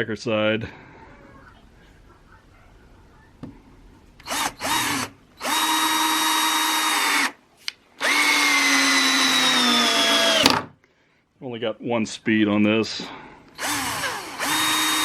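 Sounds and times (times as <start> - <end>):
cordless drill driving screw: 4.2 - 7.4, 8.0 - 10.7, 13.6 - 15.0.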